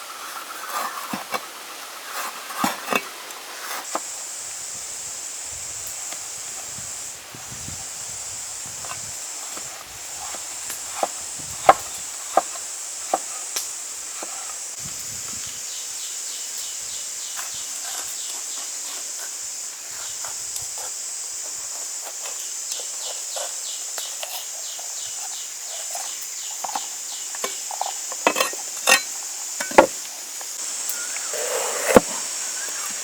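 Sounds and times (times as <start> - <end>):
high buzz of insects: 0.0 - 33.0
knocks and clicks of food handling: 27.4 - 30.0.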